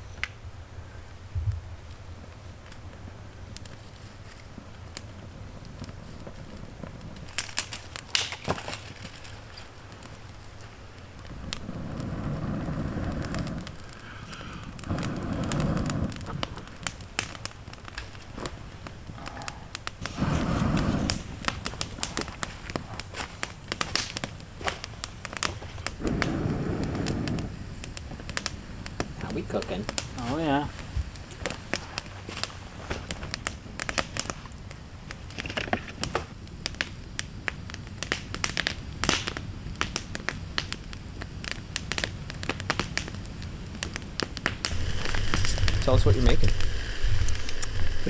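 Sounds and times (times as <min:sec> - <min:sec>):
campfire crackling and popping: 0:01.5 - 0:48.0
low swells: 0:44.7 - 0:48.0.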